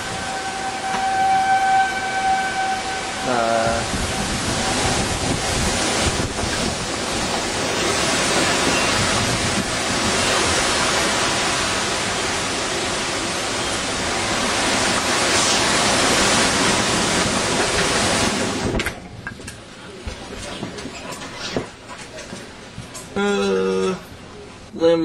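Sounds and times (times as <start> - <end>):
strong storm wind rushing: 2.8 - 20.8.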